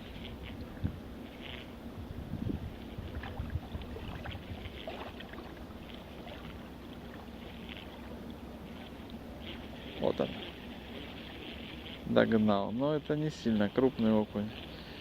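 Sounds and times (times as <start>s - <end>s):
wind buffeting microphone: 0.6s - 1.1s, 1.9s - 5.2s
small waves lapping on shore: 2.6s - 15.0s.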